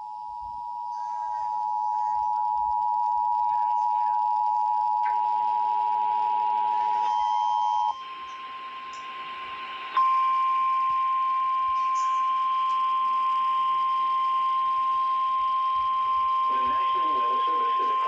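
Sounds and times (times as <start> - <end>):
two-tone attention beep: 0.0 - 8.4.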